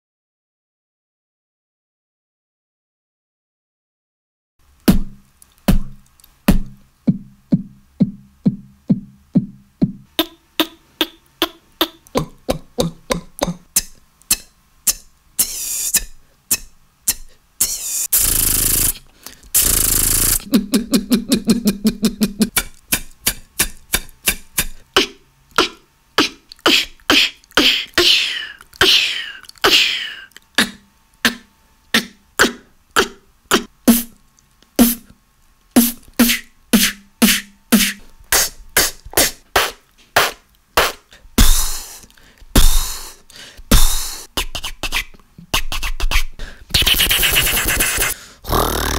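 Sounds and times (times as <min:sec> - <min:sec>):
beatboxing drum hits: 0:04.8 - 0:19.0, 0:19.6 - 0:20.5, 0:22.5 - 0:27.9, 0:30.6 - 0:34.2, 0:34.8 - 0:35.1, 0:35.8 - 0:42.0, 0:42.6 - 0:48.9
low mouth buzzing: 0:04.9 - 0:19.0, 0:19.6 - 0:34.2, 0:35.8 - 0:45.6, 0:46.8 - 0:48.9
long hissing sounds: 0:15.4 - 0:16.4, 0:17.6 - 0:20.4, 0:41.4 - 0:44.3.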